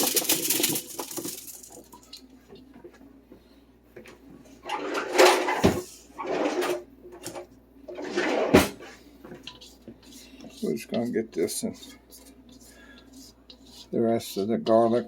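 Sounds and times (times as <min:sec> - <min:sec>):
vegetables rattling into metal pan: 0:00.0 - 0:02.0.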